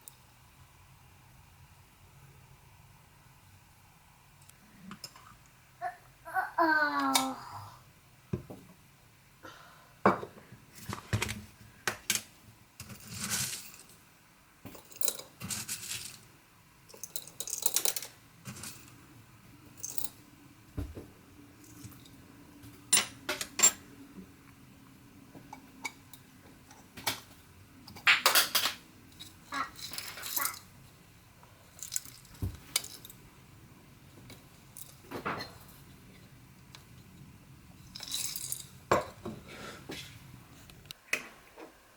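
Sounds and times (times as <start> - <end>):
faint steady hum: 0.0 - 41.9
dishes and utensils clinking: 27.9 - 30.6.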